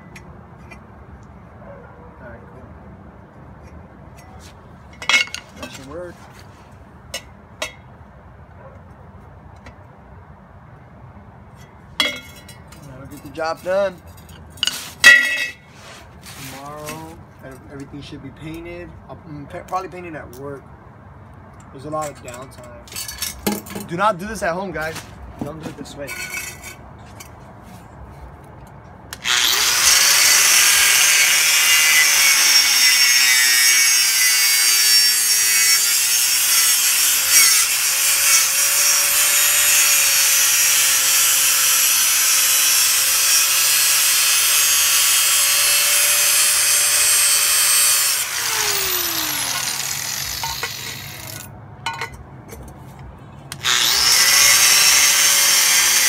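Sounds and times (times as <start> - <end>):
power tool cutting metal: 29.2 - 51.5, 53.5 - 56.0.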